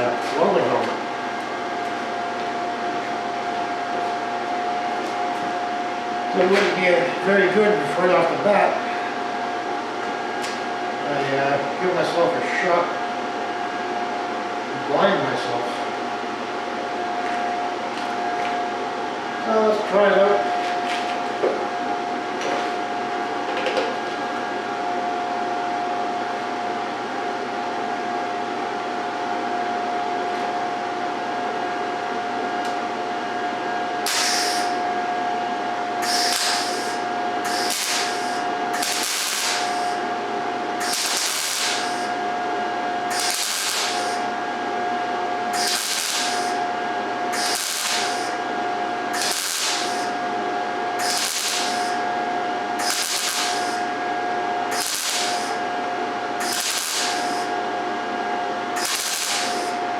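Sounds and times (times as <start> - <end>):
welder hiss and hum: 34.0 - 34.9, 36.0 - 40.2, 40.8 - 42.2, 43.0 - 44.5, 45.5 - 46.7, 47.3 - 48.5, 49.1 - 50.3, 51.0 - 52.1, 52.7 - 54.0, 54.6 - 55.7, 56.3 - 57.6, 58.7 - 59.8
welding arc crackling: 34.0 - 34.9, 36.0 - 42.4, 43.0 - 44.7, 45.4 - 50.3, 50.9 - 52.1, 52.7 - 54.0, 54.6 - 57.6, 58.7 - 59.8.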